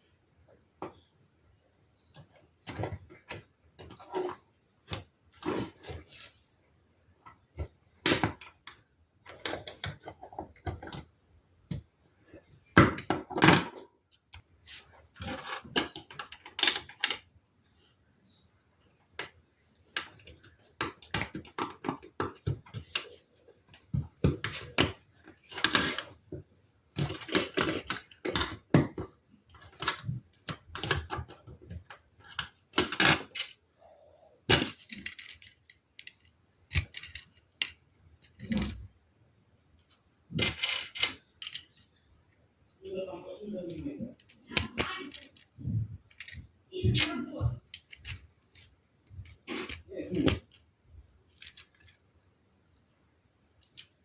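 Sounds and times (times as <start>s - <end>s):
plastic pieces clicking and rattling: 15.2s - 17.3s, 19.9s - 26.2s, 27.0s - 33.6s, 34.5s - 38.8s, 39.8s - 42.0s, 43.7s - 52.1s, 53.6s - 54.0s.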